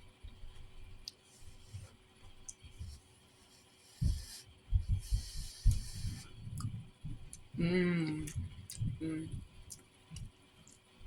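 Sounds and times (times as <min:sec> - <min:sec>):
person chewing rice: 0:02.4 - 0:07.5.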